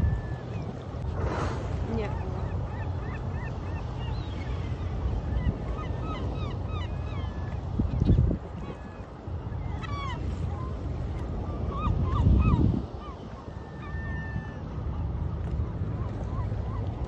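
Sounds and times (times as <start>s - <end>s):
low wind rumble: 0.0s - 17.0s
seabirds squealing calls: 1.9s - 14.7s.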